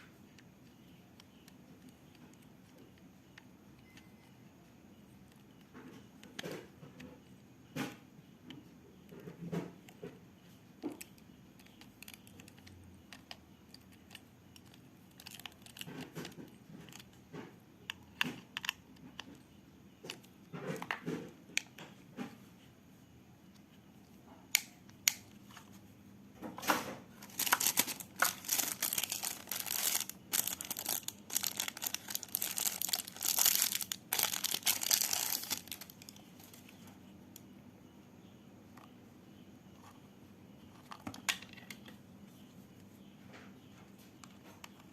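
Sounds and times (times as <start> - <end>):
plastic packaging crinkling: 27.1 - 36.7.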